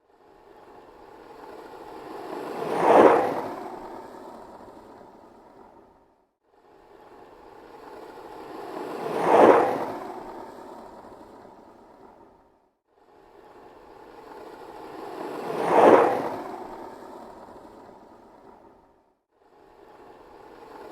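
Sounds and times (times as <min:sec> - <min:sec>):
skateboard wheels rolling on pavement: 0:02.0 - 0:03.8, 0:08.5 - 0:10.0, 0:15.1 - 0:16.5.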